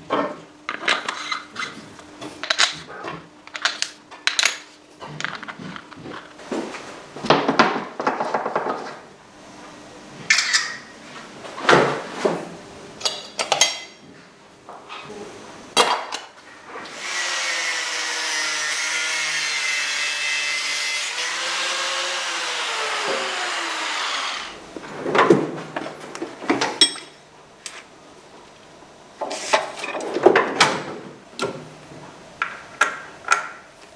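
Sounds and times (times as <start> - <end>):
power tool running: 16.9 - 24.7
metal tools clattering: 26.7 - 27.2.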